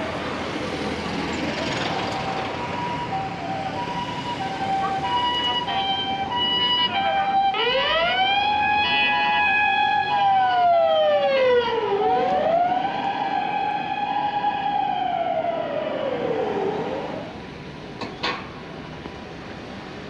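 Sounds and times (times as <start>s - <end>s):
emergency vehicle siren wailing: 1.6s - 17.4s.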